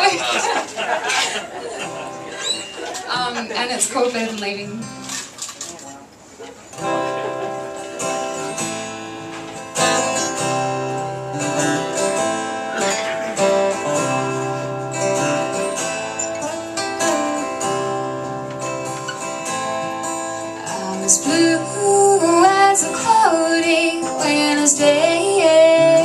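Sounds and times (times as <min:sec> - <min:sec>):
acoustic guitar strumming: 0:00.0 - 0:05.5, 0:06.6 - 0:26.0.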